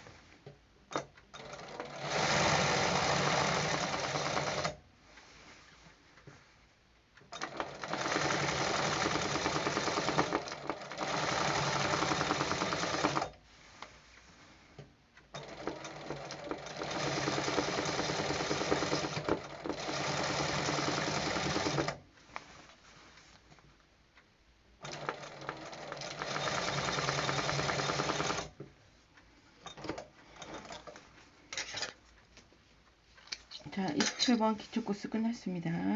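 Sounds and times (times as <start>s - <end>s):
sewing machine stitching fast: 1.4s - 4.8s, 7.4s - 13.4s, 15.4s - 22.0s, 24.8s - 28.6s.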